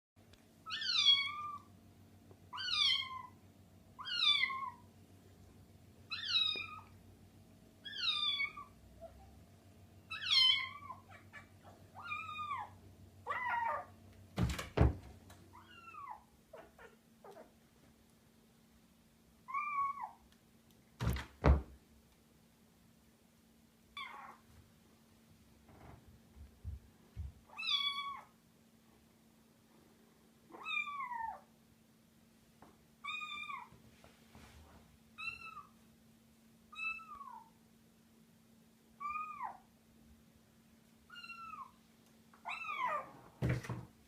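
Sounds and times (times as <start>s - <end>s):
cat meowing: 10.1s - 13.9s, 42.4s - 43.1s.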